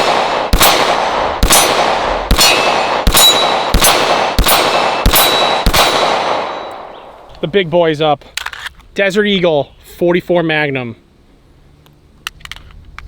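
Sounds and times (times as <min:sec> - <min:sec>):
pistol shots: 0:00.0 - 0:07.3
steel target ringing: 0:00.6 - 0:07.0.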